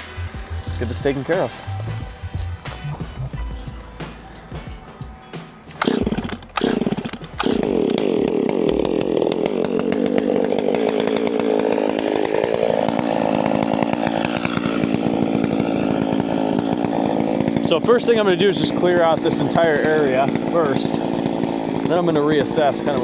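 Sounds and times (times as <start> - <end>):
chainsaw starting and running: 0.0 - 4.8, 5.6 - 23.0.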